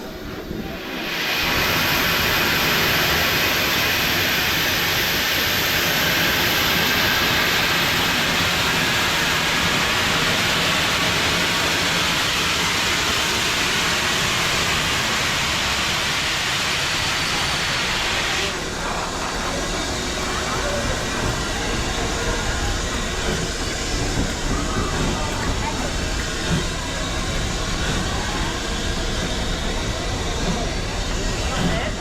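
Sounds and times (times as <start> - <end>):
steam locomotive hissing steam: 0.0 - 32.0.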